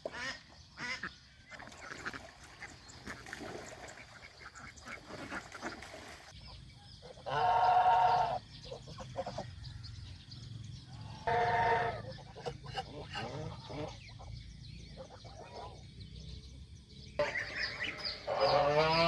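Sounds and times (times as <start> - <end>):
goose honking: 11.2 - 13.9, 17.2 - 19.0.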